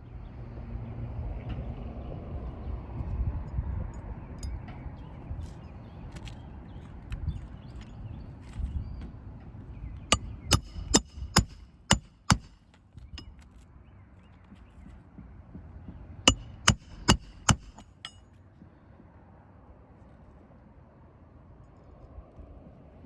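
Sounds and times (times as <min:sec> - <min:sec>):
hammer blows ringing: 0:10.1 - 0:12.6, 0:16.3 - 0:18.2.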